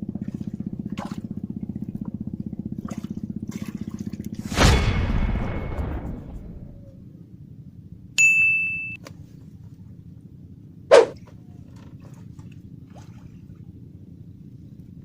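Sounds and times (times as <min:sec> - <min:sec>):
short loud burst: 0:04.4 - 0:07.0
high steady ding: 0:08.2 - 0:09.0.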